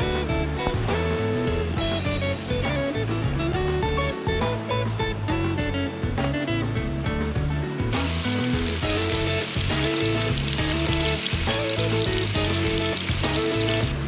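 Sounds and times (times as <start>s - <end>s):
guitar music: 0.0s - 14.0s
food frying sizzle: 7.9s - 14.0s.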